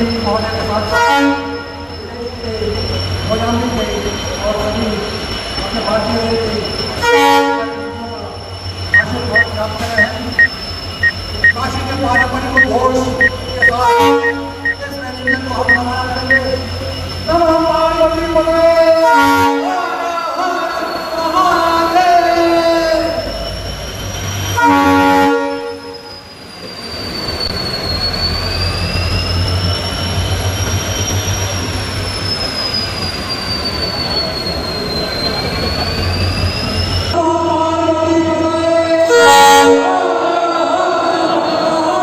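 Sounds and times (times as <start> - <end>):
locomotive horn blast: 0.9 - 1.8, 7.0 - 8.0, 24.6 - 26.0, 39.0 - 40.2.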